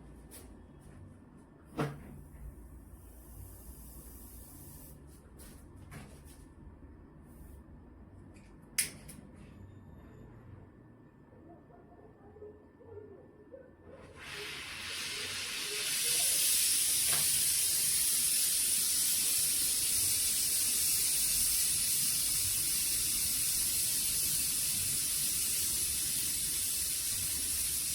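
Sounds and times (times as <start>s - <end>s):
torch hissing: 14.1s - 27.9s.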